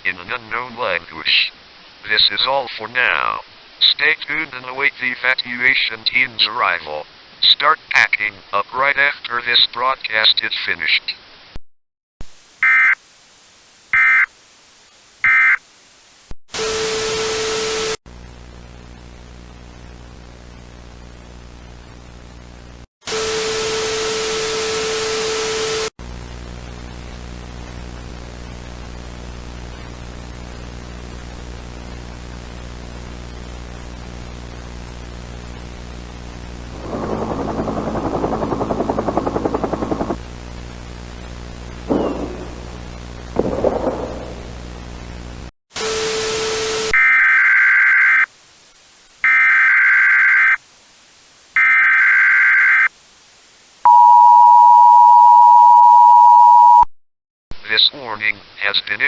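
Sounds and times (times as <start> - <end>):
static bursts with steady tone: 12.2 - 16.4, 44.1 - 56.9
rough pulsing noise: 36.6 - 41.1
alert data tones: 49.2 - 50.6, 51.6 - 52.9, 53.9 - 56.9.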